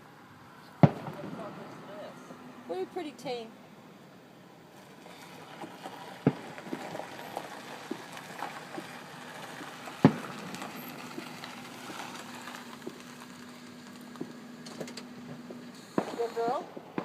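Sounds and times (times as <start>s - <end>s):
firework pops and crackles: 0.7s - 1.8s, 4.7s - 17.0s
loud firework booms: 0.8s - 1.9s, 6.2s - 6.9s, 10.0s - 10.6s, 15.2s - 17.0s.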